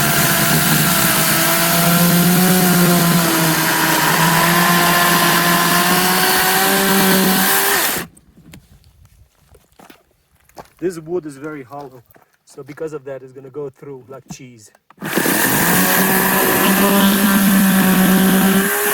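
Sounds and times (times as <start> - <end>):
electric chainsaw cutting log: 0.0 - 8.1, 15.0 - 18.9.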